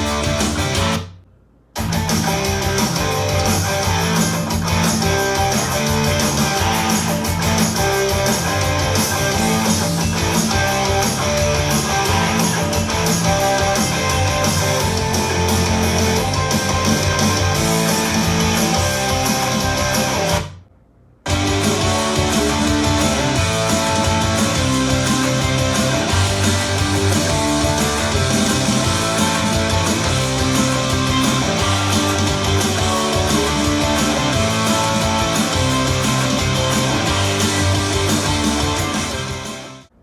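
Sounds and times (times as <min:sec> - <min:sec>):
rock music through speaker: 0:00.0 - 0:01.1, 0:01.8 - 0:20.6, 0:21.3 - 0:40.0.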